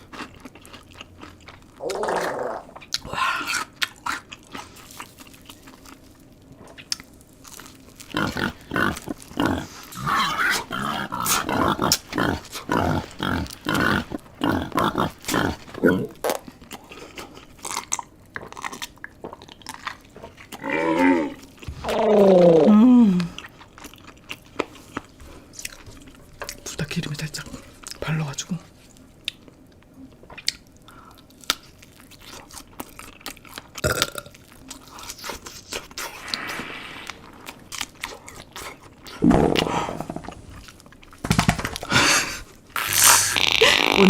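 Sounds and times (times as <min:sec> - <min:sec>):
crunchy chewing and biting: 0:00.0 - 0:20.7, 0:31.3 - 0:36.2, 0:37.2 - 0:41.1.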